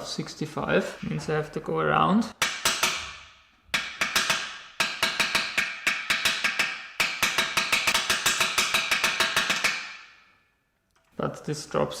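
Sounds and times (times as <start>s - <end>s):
hammer tapping on metal: 3.7s - 9.8s.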